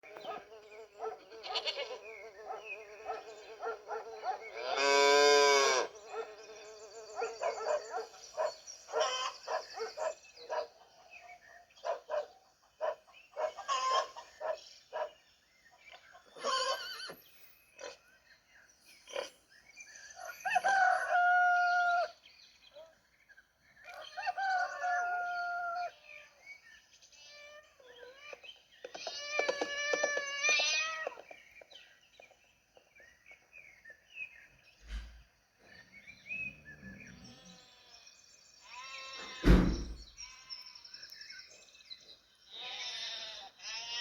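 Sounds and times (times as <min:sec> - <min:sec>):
long steady animal call: 0:00.0 - 0:15.2, 0:15.8 - 0:18.0, 0:18.9 - 0:23.0, 0:23.9 - 0:33.5, 0:35.6 - 0:39.5, 0:40.2 - 0:44.0
wavering bleat: 0:01.2 - 0:02.2, 0:04.5 - 0:06.0, 0:42.5 - 0:44.0.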